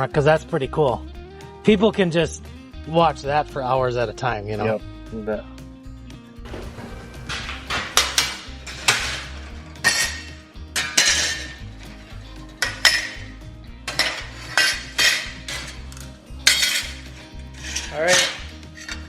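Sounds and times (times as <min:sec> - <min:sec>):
steel plates clanking: 0:06.5 - 0:19.0.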